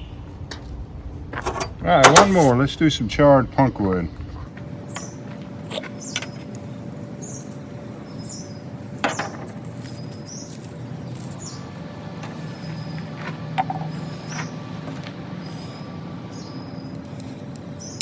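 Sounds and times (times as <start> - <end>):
low background hum: 0.0 - 18.0
small birds chirping: 4.5 - 18.0.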